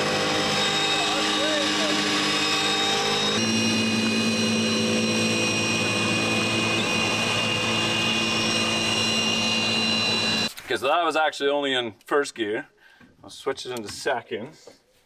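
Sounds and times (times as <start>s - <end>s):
drill motor whine: 0.0s - 10.5s.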